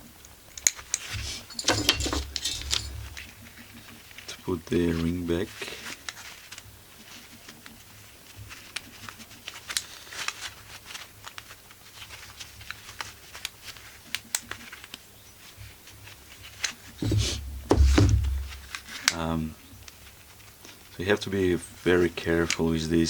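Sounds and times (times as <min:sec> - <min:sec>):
small metal parts clicking: 0:01.2 - 0:03.2
heavy low thump: 0:17.0 - 0:18.8.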